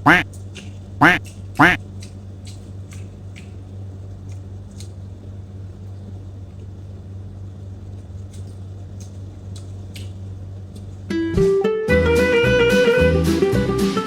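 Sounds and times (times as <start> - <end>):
low electrical hum: 0.0 - 14.0
people chewing food: 0.1 - 11.1.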